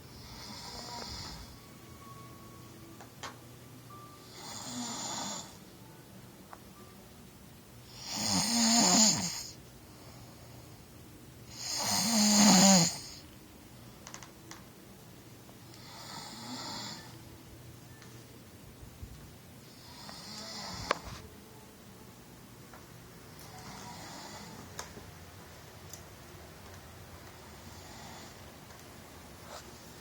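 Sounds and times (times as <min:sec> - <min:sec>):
man snoring: 0:00.2 - 0:01.6, 0:04.3 - 0:05.6, 0:07.9 - 0:09.6, 0:11.5 - 0:13.2, 0:15.8 - 0:17.1, 0:19.8 - 0:21.0, 0:23.6 - 0:24.6, 0:27.7 - 0:28.4.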